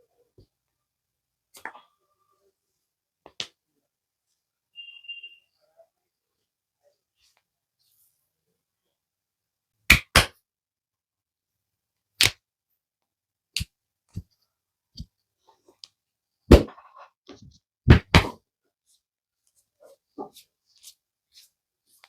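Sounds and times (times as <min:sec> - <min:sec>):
hands slapping skin: 0:09.9 - 0:10.4, 0:12.2 - 0:12.4.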